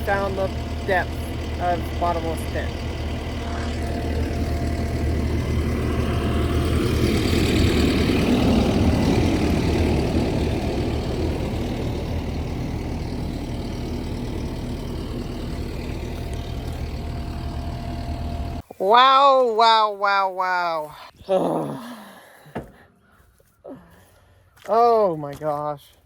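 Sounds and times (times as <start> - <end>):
skid steer engine running: 0.0 - 18.7.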